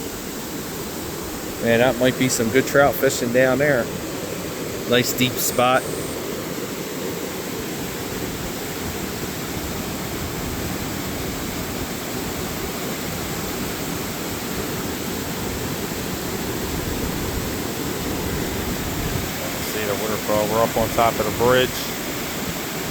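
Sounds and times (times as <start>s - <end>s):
waterfall rushing: 0.0s - 22.9s.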